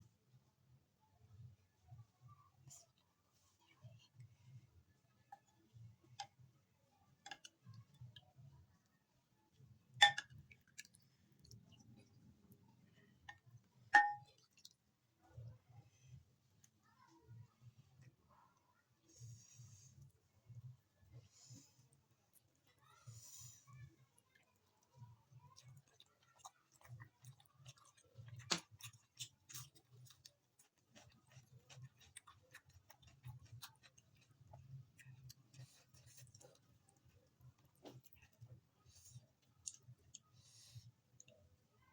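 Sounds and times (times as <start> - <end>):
chewing with mouth clicks: 10.1 - 15.4, 23.7 - 41.6
cutlery clinking against plate: 14.0 - 14.3.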